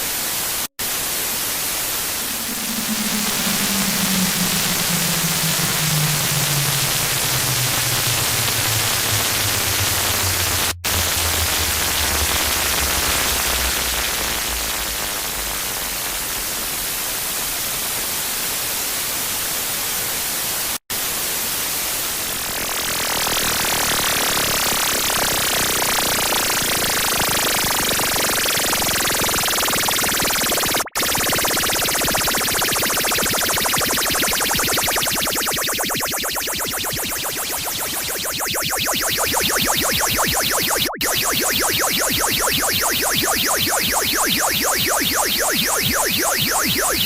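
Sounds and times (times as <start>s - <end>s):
harsh electronic static hiss: 1.7s - 13.0s
low drone sliding down in pitch: 2.1s - 15.1s.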